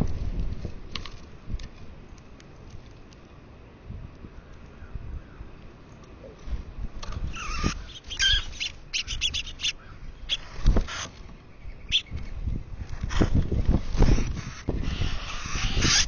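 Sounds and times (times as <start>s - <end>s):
wind rumbling on microphone: 0.0s - 16.0s
bird chirps: 7.3s - 12.3s.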